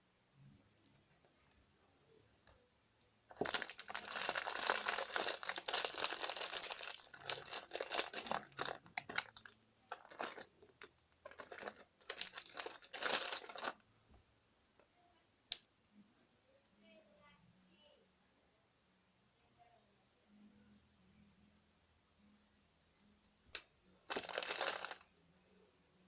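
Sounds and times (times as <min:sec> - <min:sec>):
crinkling and rustling handling noise: 0:03.3 - 0:14.9, 0:24.0 - 0:25.1.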